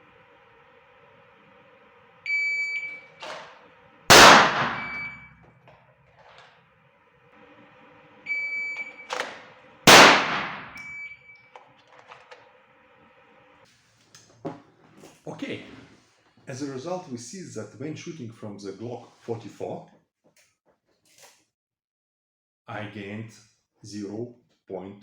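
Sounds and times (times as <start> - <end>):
steady background hum: 0.0 - 19.4
shot timer beep: 2.3 - 3.2, 4.5 - 5.4, 8.3 - 9.2, 10.3 - 11.5
loud pistol shot: 4.1 - 5.2, 9.9 - 10.8.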